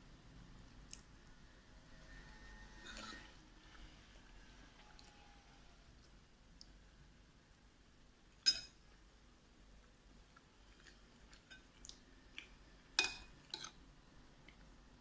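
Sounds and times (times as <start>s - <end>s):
metal utensil clinking on a dish: 8.4s - 8.8s, 13.0s - 13.8s.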